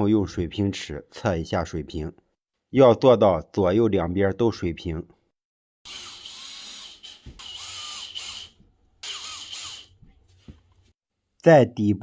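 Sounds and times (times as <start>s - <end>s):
cordless drill driving screw: 5.9s - 10.0s.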